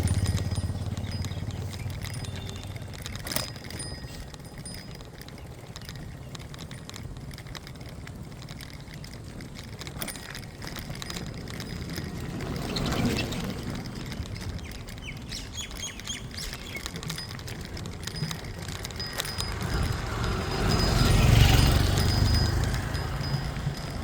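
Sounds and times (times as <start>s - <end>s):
birds chirping: 0.1s - 3.1s, 12.2s - 18.3s.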